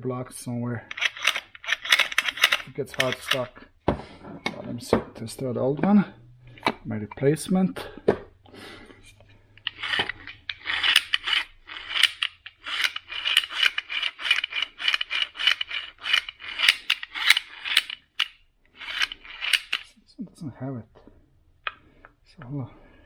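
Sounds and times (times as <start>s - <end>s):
gears scraping and rasping: 0.9s - 3.5s, 9.6s - 19.9s.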